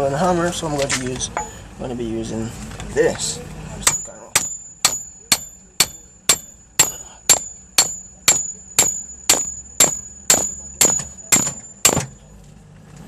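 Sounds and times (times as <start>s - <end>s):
metal tool tapping on wrench: 3.8s - 12.2s.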